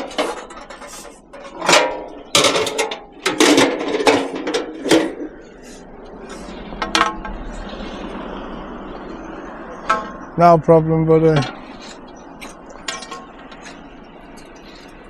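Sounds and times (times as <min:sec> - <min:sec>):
scrap metal clanking: 0:00.0 - 0:08.1, 0:11.3 - 0:15.0.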